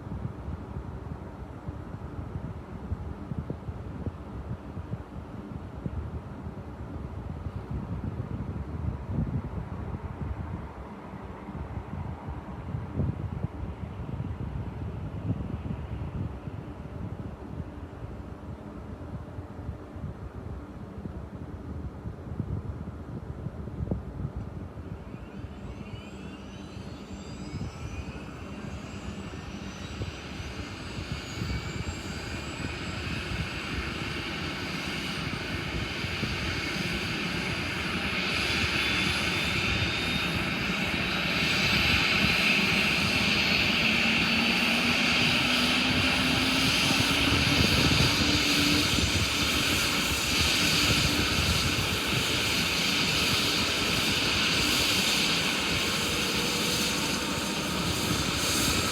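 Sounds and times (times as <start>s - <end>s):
helicopter turbine whine rising: 24.7s - 58.9s
helicopter engine rush: 25.5s - 58.9s.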